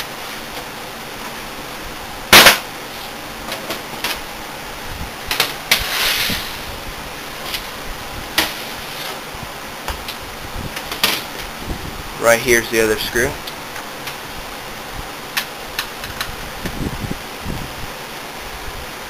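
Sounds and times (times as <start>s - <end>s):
brief scrape: 5.7s - 6.7s.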